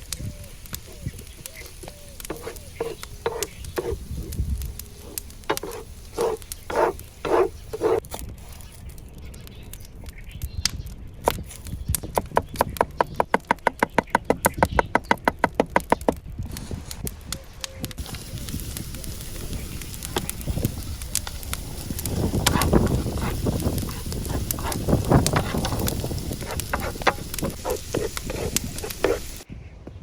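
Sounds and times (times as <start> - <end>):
knife chopping on cutting board: 2.3 - 4.0, 5.0 - 8.0, 26.4 - 29.3.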